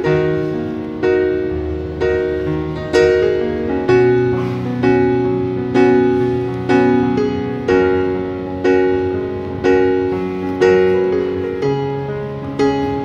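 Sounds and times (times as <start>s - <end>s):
piano chords: 0.0s - 13.0s.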